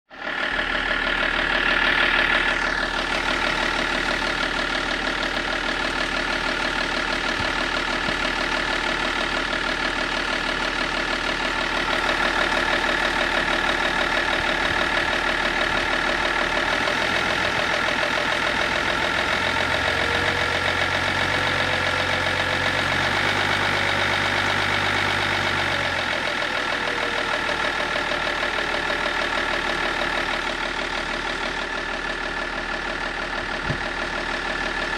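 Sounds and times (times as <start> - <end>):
deep hum: 0.1 - 10.0
car engine idling: 0.1 - 34.9.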